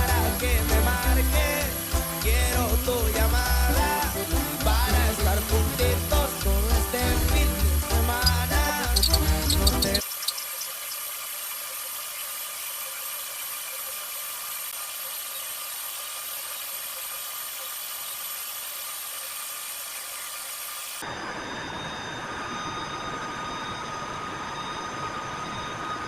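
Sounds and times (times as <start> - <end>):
background music: 0.0 - 10.0
machine running with hiss and whine: 0.0 - 26.0.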